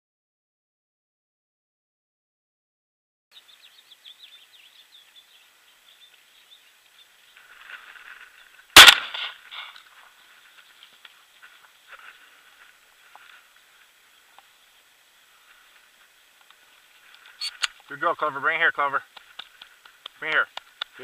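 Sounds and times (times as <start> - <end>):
shotgun blast with echo: 8.8 - 9.3.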